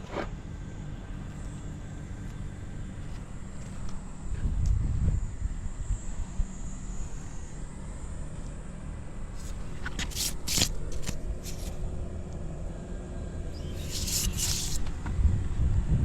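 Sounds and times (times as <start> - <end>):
motorcycle engine low rumble: 0.0 - 9.9, 14.8 - 16.0
short hissing bursts: 9.4 - 11.7, 13.6 - 14.9.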